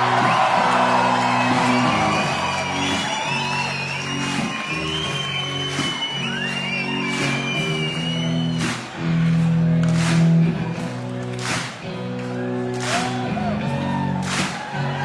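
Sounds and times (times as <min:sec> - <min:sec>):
audience shouting: 0:00.0 - 0:07.4
live rock band playing: 0:00.0 - 0:15.0.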